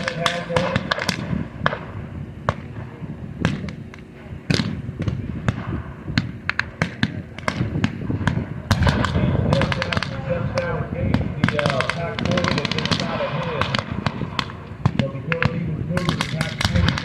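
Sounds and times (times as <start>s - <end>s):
blank gunfire shots: 4.5s - 17.0s.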